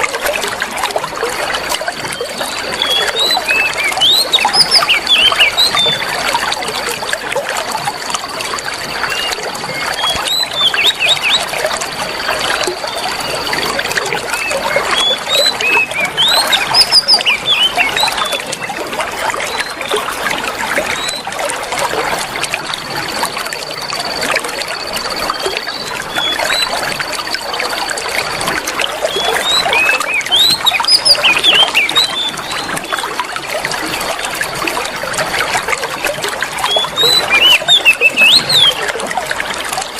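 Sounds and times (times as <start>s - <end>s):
water trickling and babbling: 0.0s - 39.9s
bird chirps: 2.2s - 6.1s, 8.9s - 11.6s, 12.2s - 18.5s, 29.1s - 33.1s, 36.7s - 38.9s.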